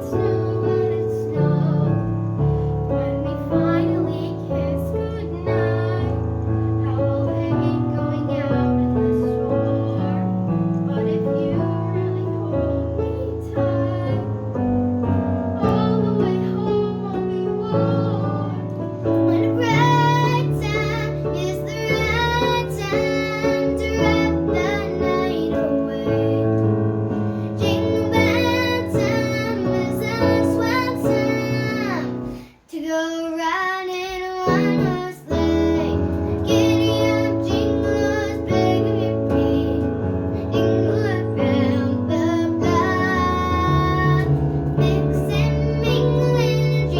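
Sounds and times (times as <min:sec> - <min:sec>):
child singing: 0:00.0 - 0:02.2, 0:02.9 - 0:46.9
keyboard accompaniment: 0:00.0 - 0:32.5, 0:34.4 - 0:46.9.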